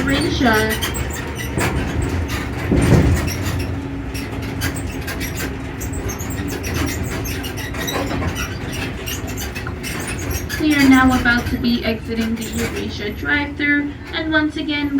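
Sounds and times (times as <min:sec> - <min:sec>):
carriages rattling and clicking: 0:00.0 - 0:14.9
tram bump: 0:00.0 - 0:14.9
tram motor humming: 0:00.0 - 0:14.9.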